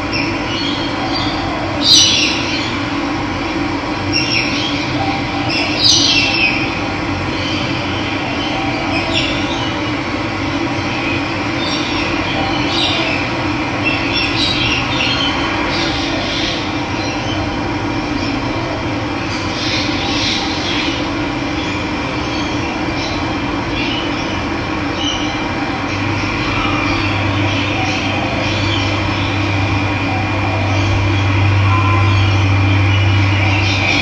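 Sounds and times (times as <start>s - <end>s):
birds chirping: 19.2s - 34.0s.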